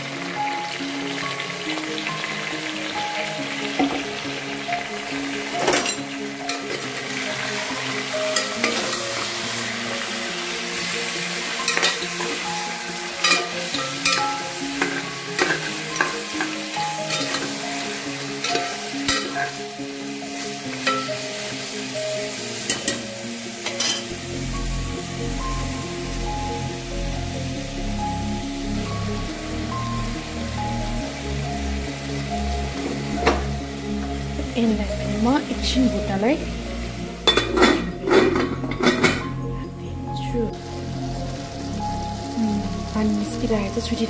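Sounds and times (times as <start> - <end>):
meat sizzling in oil: 0.0 - 44.0
spoon clacking against pot: 11.6 - 12.5, 13.2 - 16.5, 17.1 - 17.6, 18.4 - 19.6.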